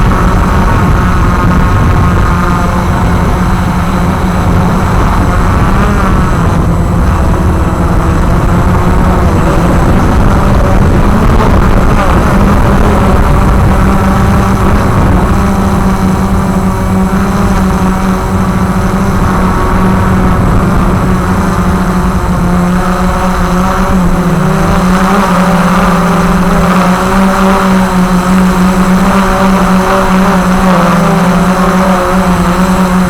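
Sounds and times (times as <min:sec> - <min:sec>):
heavy low rumble: 0:00.0 - 0:23.4
quadcopter propellers buzzing: 0:00.0 - 0:33.0.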